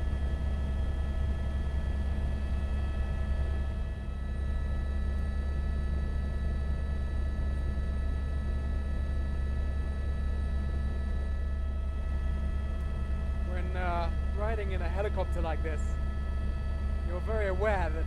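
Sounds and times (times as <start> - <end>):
helicopter rotor and engine drone: 0.0 - 18.0
high-pitched whine: 11.7 - 18.0.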